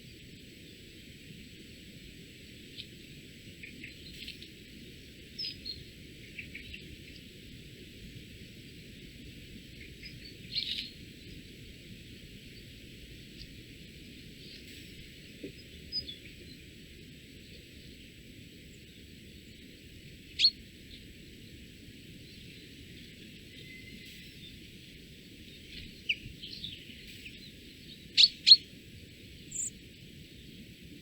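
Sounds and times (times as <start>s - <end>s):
faint steady hiss: 0.0s - 31.0s
short bird chirps: 23.5s - 24.5s.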